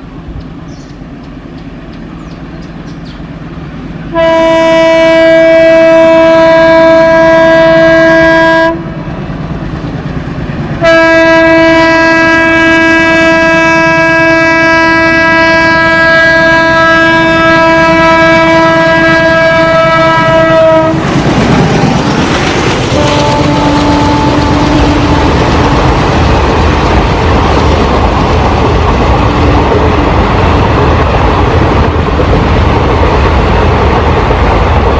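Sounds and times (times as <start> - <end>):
train rumble and clatter: 0.0 - 34.9
locomotive horn blaring: 4.1 - 9.0, 10.8 - 21.1, 22.8 - 25.8.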